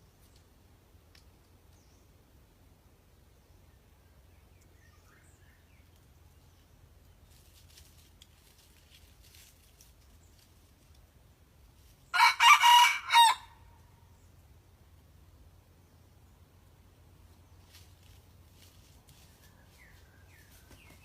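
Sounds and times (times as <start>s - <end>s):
young rooster crowing: 12.1s - 13.7s.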